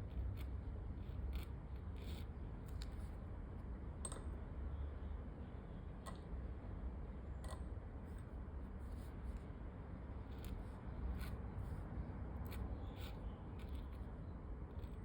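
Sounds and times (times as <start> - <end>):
pen nib scratching on paper: 0.0 - 3.1, 10.2 - 15.0
low steady hum: 0.0 - 15.0.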